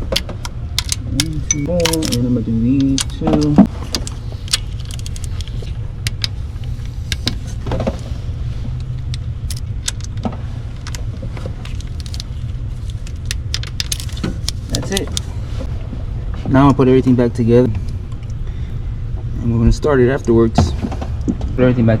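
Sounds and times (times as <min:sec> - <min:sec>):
steady low rumble: 0:00.0 - 0:22.0
torque wrench metallic clicks: 0:00.8 - 0:07.5.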